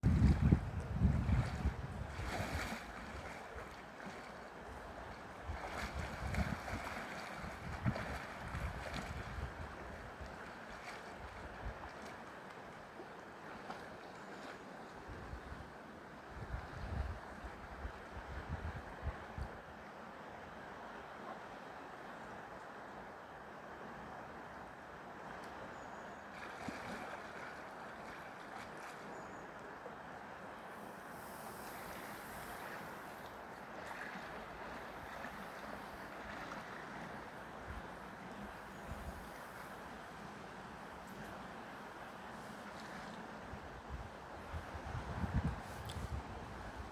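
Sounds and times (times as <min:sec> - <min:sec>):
wind buffeting microphone: 0:00.0 - 0:03.3, 0:05.4 - 0:10.1, 0:16.4 - 0:19.6, 0:43.5 - 0:46.9
river flowing: 0:01.4 - 0:15.1, 0:19.9 - 0:44.9
river water rushing: 0:30.0 - 0:38.7
faint tick: 0:45.8 - 0:46.0.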